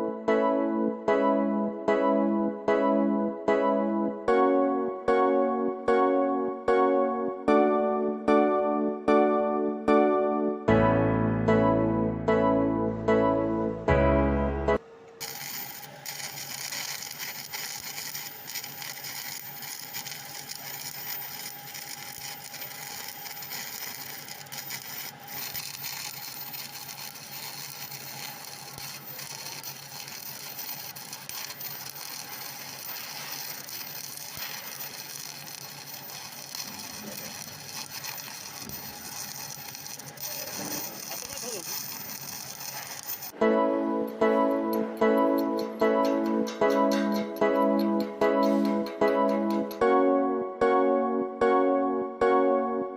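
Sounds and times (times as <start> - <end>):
welding arc crackling: 15.1 - 43.4, 45.4 - 49.8.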